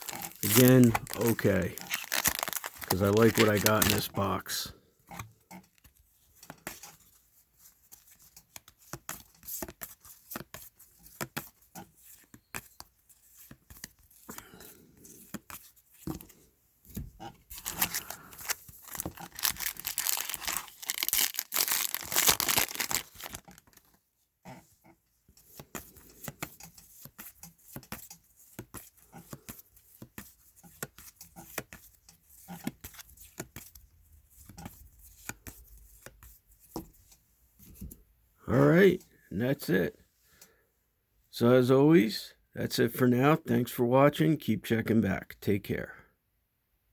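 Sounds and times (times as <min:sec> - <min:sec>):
foil pack tearing open: 0:00.0 - 0:04.2, 0:17.6 - 0:23.8
cards clicking and flicking: 0:00.0 - 0:04.3.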